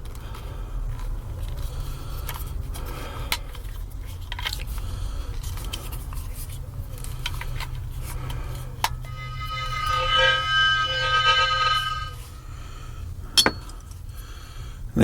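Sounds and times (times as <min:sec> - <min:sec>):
steady low hum: 0:08.7 - 0:12.2.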